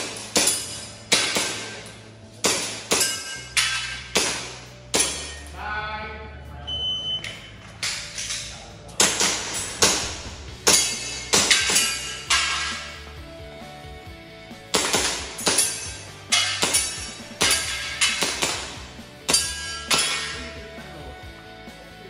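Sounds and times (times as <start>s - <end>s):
background music with bass: 0.0s - 22.0s
airsoft pistol shots: 9.0s - 11.8s.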